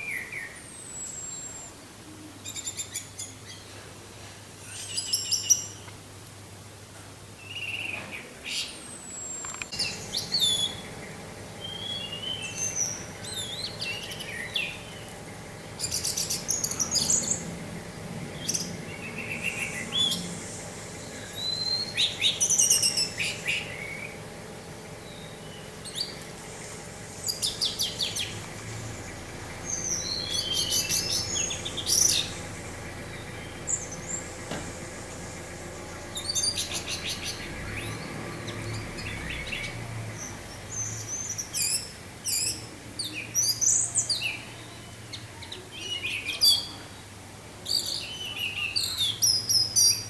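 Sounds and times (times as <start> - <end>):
thrush singing: 9.5 - 42.7.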